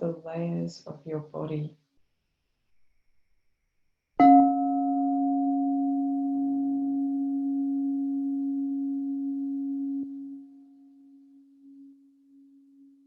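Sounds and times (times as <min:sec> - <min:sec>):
crystal singing bowl ringing: 0:04.2 - 0:13.0.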